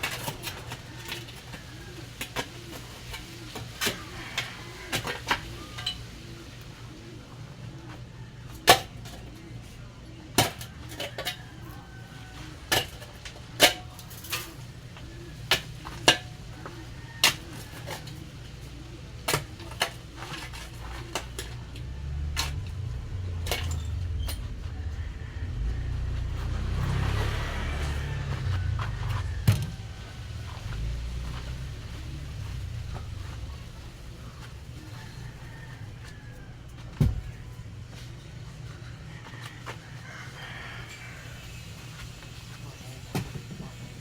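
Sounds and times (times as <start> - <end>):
hand tools knocking and clinking: 19.4 - 24.5
low rumble: 21.6 - 35.4.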